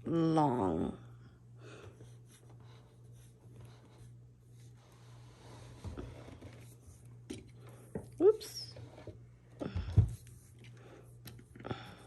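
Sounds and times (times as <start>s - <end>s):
plastic hose rustling and scraping: 2.2s - 11.6s.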